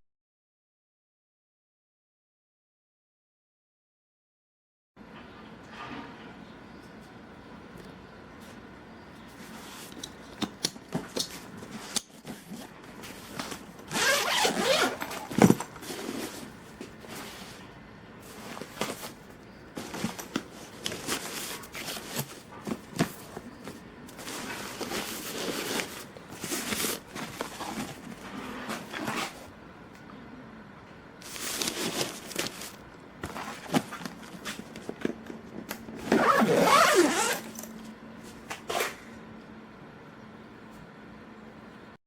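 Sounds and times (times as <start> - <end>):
nylon fabric rustling: 11.6 - 17.6, 18.2 - 29.5, 36.1 - 37.6
zipper pulled: 13.4 - 16.5, 36.0 - 37.7.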